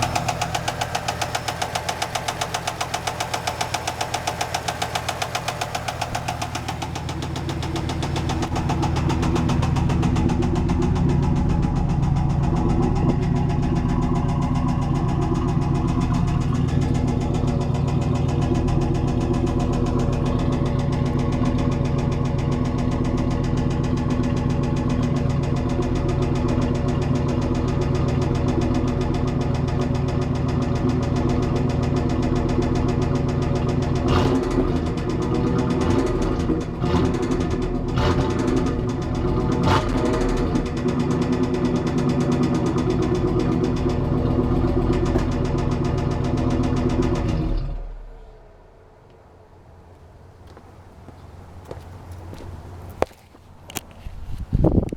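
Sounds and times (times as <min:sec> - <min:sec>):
car engine with rod knock: 0:00.0 - 0:14.5, 0:35.9 - 0:40.9.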